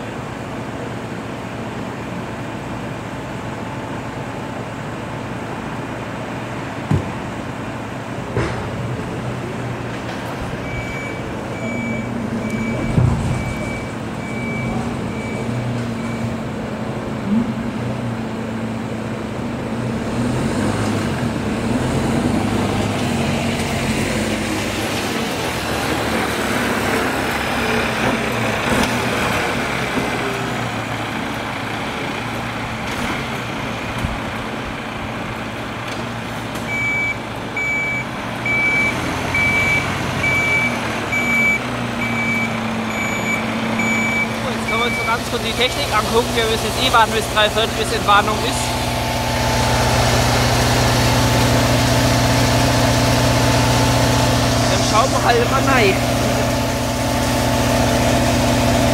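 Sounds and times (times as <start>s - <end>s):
engine running: 0.0s - 58.9s
low thump: 6.9s - 7.2s
reversing alarm beeping: 10.6s - 16.4s, 36.7s - 45.4s.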